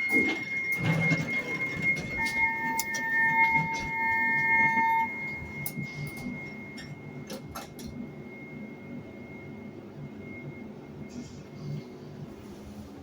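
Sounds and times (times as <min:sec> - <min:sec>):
high-pitched alarm tone: 0:00.0 - 0:11.7
lower steady tone: 0:00.0 - 0:12.4.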